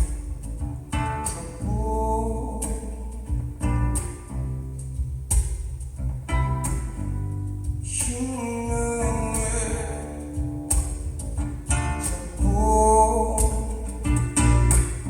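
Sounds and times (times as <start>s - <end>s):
plucked acoustic guitar: 0.0s - 15.0s
steady bass: 0.0s - 15.0s
person singing: 1.5s - 3.3s, 7.8s - 10.2s, 12.2s - 15.0s.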